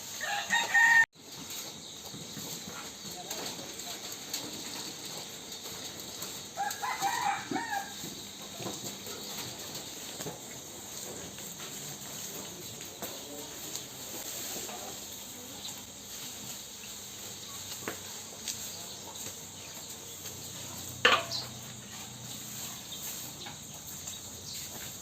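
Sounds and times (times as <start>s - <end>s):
insects chirring: 0.0s - 25.0s
cow chewing grass: 7.7s - 25.0s.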